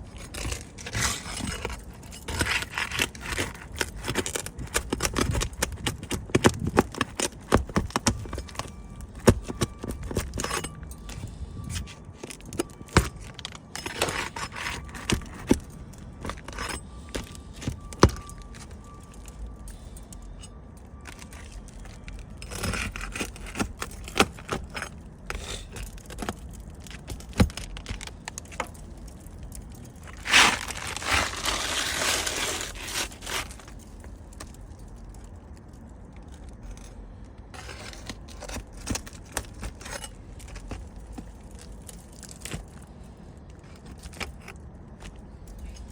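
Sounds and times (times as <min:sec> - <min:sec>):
hand tools scraping roof shingles: 0:00.0 - 0:18.7, 0:21.1 - 0:29.2, 0:30.0 - 0:33.8.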